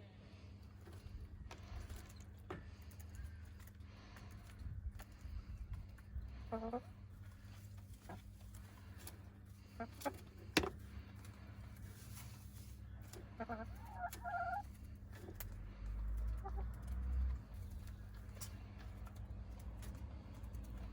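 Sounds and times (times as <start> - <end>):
hens clucking: 5.3 - 20.9.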